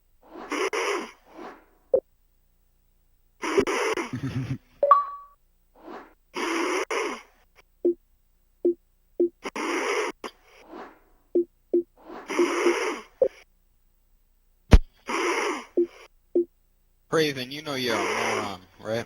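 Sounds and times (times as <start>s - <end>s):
man snoring loudly: 17.8s - 18.6s.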